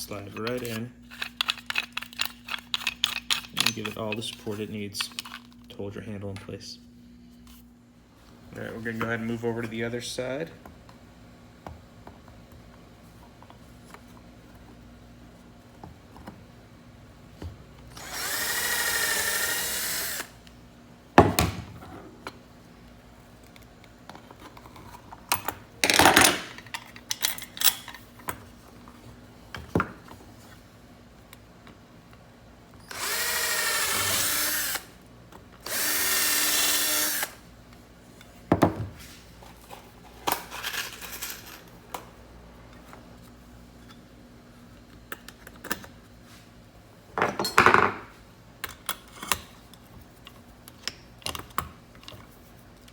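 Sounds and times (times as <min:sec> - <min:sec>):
electric drill drilling into plastic: 0:18.0 - 0:20.4, 0:32.9 - 0:34.9, 0:35.6 - 0:37.4.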